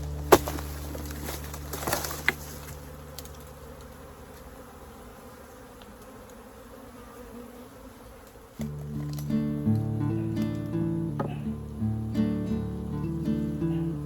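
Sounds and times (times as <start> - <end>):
crackles: 0.0 - 4.6
honeybees buzzing: 0.0 - 14.0.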